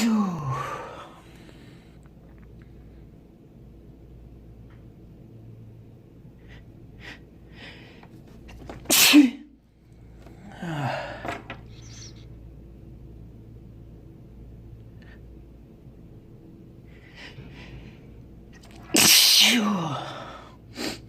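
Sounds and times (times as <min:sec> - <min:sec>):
person sneezing: 0:08.8 - 0:09.5, 0:18.7 - 0:21.0
breathy burst: 0:10.4 - 0:11.5.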